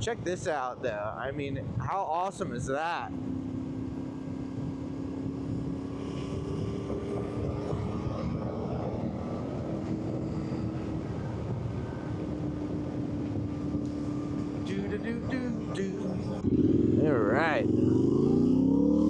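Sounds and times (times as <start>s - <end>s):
wind rush: 0.0s - 2.8s, 3.5s - 14.4s
motorcycle engine running: 2.9s - 19.0s.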